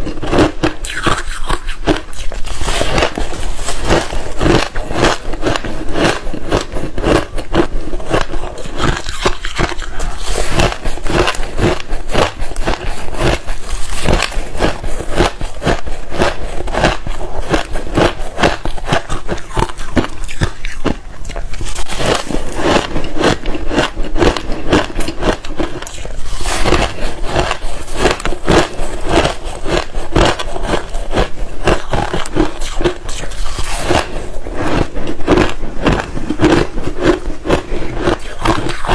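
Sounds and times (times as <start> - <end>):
ice being crunched: 0.4 - 23.1.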